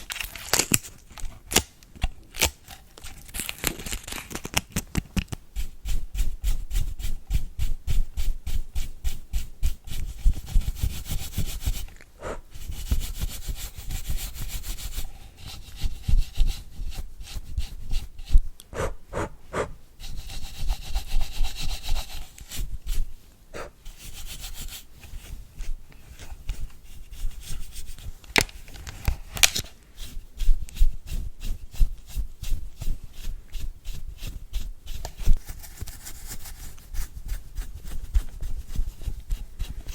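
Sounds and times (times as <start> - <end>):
brush scrubbing: 5.5 - 28.2, 29.8 - 39.9.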